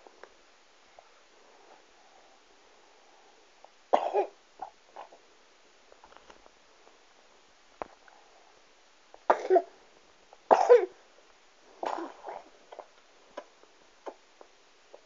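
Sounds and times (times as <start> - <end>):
young child coughing: 3.9 - 4.4, 9.3 - 9.7, 10.5 - 11.0, 11.8 - 12.5.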